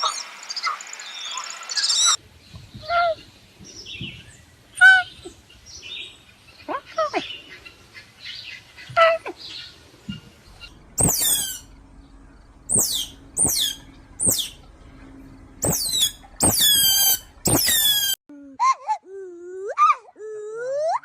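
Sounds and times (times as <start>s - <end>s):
animal squeaking: 10.6s - 11.7s, 12.7s - 14.6s, 15.6s - 18.2s.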